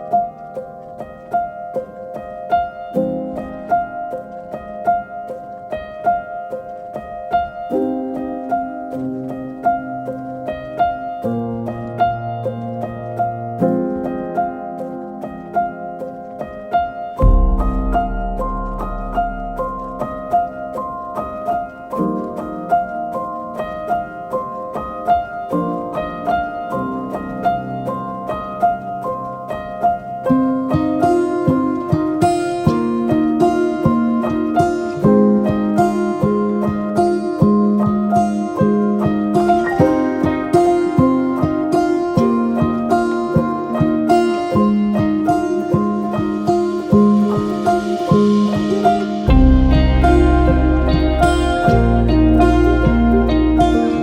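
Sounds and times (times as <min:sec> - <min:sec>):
soft instrumental music: 0:00.0 - 0:54.0
instrumental background music: 0:31.1 - 0:54.0.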